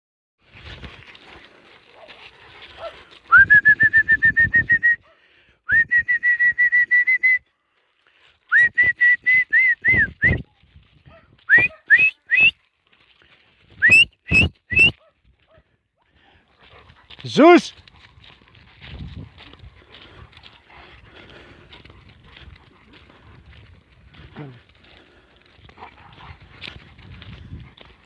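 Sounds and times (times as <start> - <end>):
whistle blasts: 11.5 - 12.5, 13.8 - 15.0.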